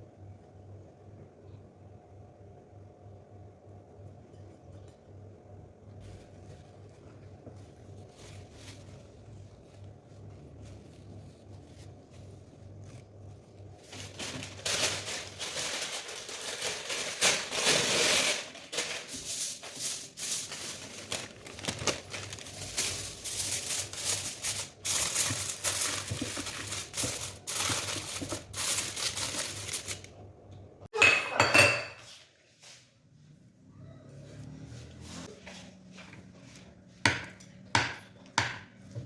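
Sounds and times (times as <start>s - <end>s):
rustling and scraping: 5.9s - 30.1s.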